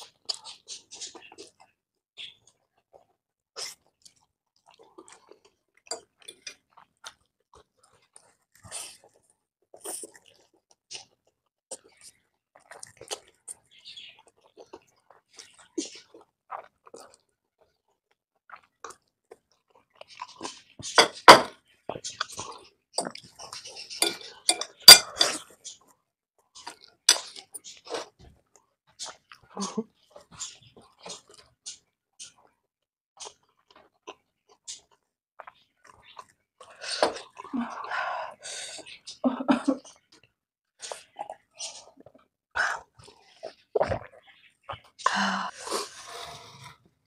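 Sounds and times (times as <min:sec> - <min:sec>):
chewing and mouth smacks: 0:02.4 - 0:21.0, 0:26.5 - 0:29.5, 0:33.2 - 0:37.5
utensils clinking against a dish: 0:23.8 - 0:25.4.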